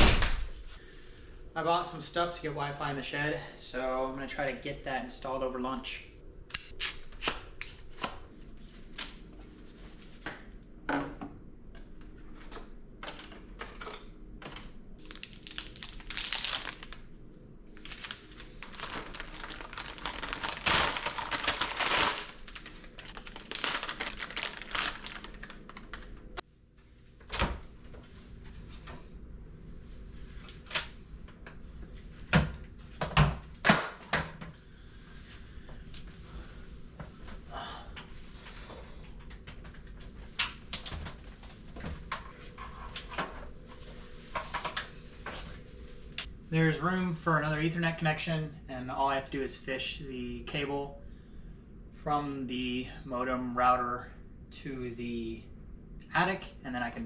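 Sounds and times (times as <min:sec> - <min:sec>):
wrapping crinkling and tearing: 0:15.0 - 0:17.1, 0:17.7 - 0:26.4.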